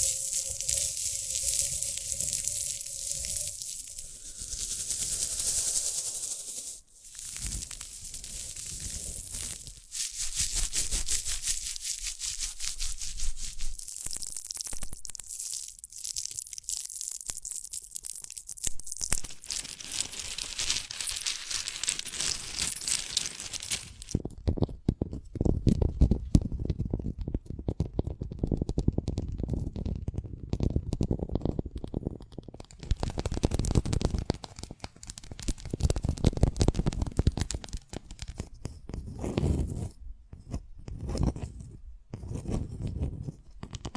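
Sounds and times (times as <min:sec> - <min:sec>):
pod crackling: 0:00.0 - 0:24.2, 0:32.8 - 0:38.4
pod rubbing and tearing: 0:00.0 - 0:24.2.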